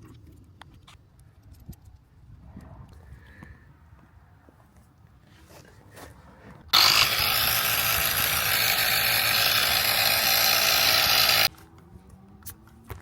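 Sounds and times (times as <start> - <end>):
compressor buzzing: 6.8 - 11.5.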